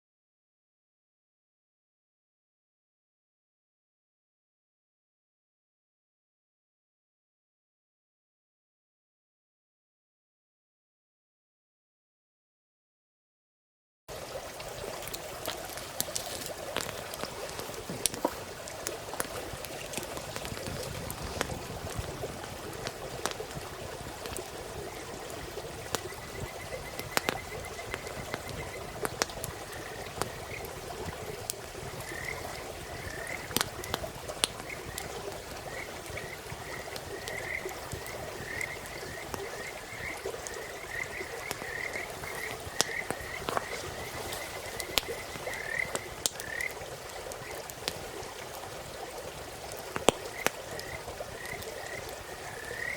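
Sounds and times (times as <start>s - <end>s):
campfire crackling: 14.1s - 52.9s
frogs calling: 14.5s - 52.9s.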